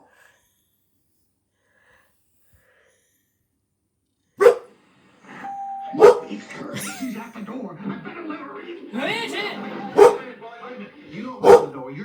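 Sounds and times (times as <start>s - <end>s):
dog barking: 4.4s - 4.8s, 5.9s - 6.4s, 9.8s - 10.3s, 11.4s - 11.9s
faint steady tone: 5.2s - 7.4s.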